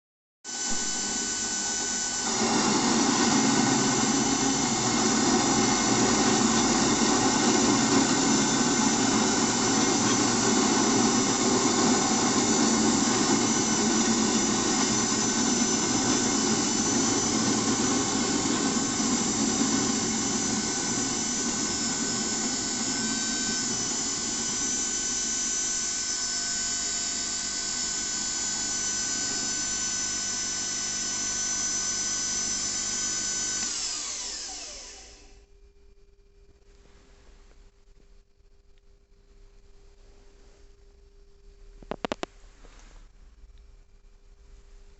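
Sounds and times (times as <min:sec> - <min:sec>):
electric motor whining: 0:00.5 - 0:35.3.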